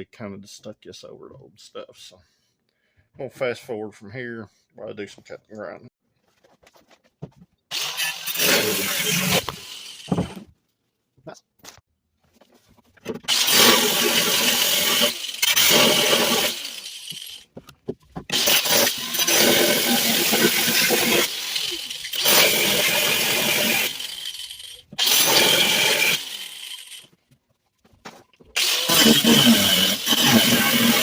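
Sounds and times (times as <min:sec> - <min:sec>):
grinder cutting sheet steel: 0:07.7 - 0:10.4, 0:13.3 - 0:17.5, 0:18.3 - 0:27.1, 0:28.6 - 0:31.0.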